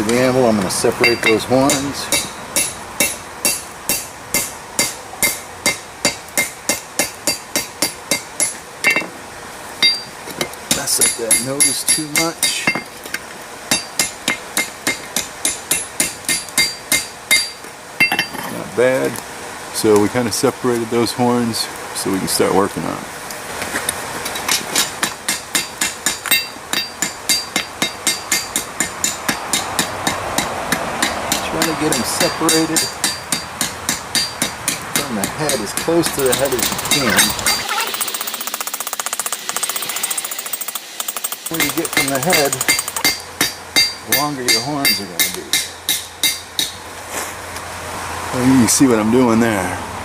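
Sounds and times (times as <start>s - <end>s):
hammer striking metal on anvil: 1.0s - 9.1s, 9.8s - 12.9s, 13.7s - 18.4s, 24.8s - 37.7s, 41.1s - 46.8s.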